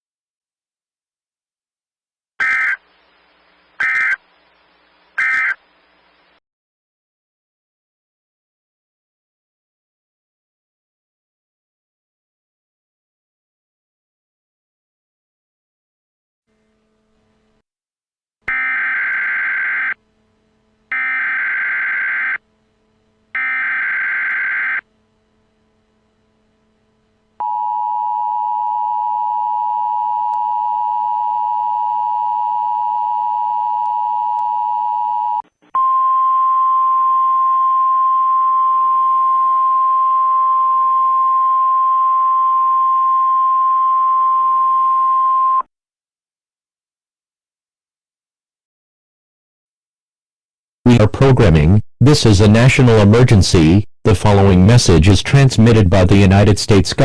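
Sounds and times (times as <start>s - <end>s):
buzzy alert data bursts: 2.4s - 2.8s, 3.8s - 4.2s, 5.0s - 5.6s, 18.5s - 20.0s, 20.9s - 22.6s, 23.3s - 26.9s
high steady tone: 18.5s - 29.3s
two-tone attention signal: 23.4s - 24.8s.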